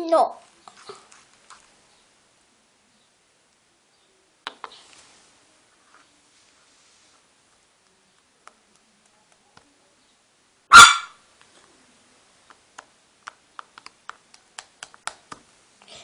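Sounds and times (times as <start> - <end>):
dog barking: 10.7 - 11.2.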